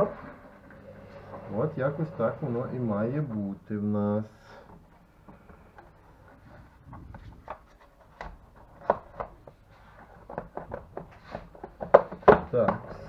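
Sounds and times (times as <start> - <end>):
plastic parts clicking and knocking: 4.7 - 13.0.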